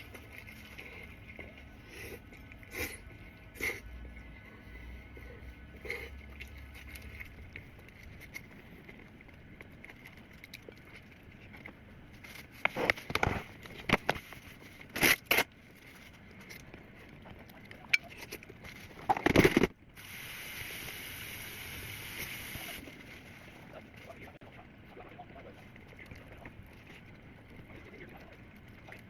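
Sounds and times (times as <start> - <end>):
close crackling and crunching: 0.0 - 20.0, 22.6 - 29.0
steady hiss: 20.0 - 22.9.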